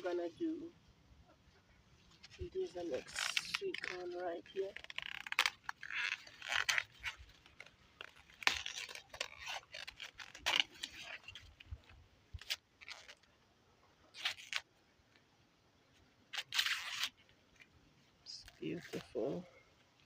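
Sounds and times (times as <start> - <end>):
corn husks rustling and crackling: 2.0 - 13.4, 16.3 - 19.5.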